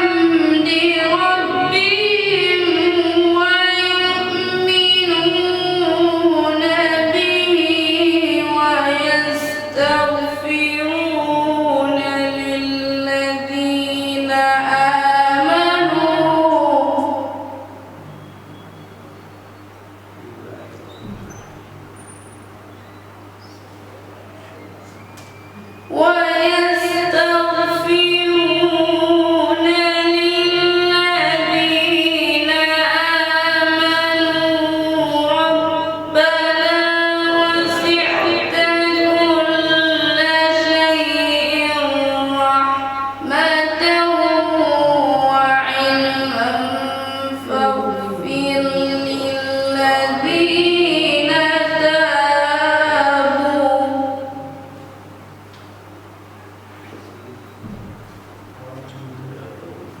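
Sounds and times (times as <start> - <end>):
steady low hum: 0.0 - 60.0
man chanting melodically: 37.2 - 45.0
man reciting in melodic chant: 37.5 - 39.7.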